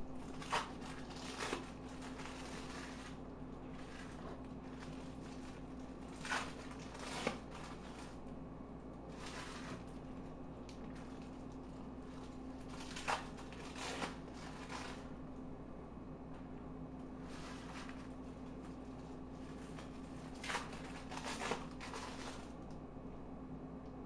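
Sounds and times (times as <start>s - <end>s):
steady low hum: 0.0s - 24.0s
plastic wrapping crinkling: 0.2s - 8.2s, 10.7s - 15.1s, 17.3s - 22.6s.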